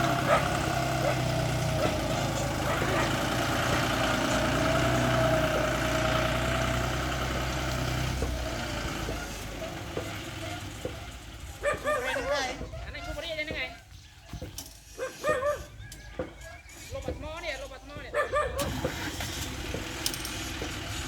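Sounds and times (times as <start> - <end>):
diesel engine running: 0.0 - 13.0, 18.2 - 21.0.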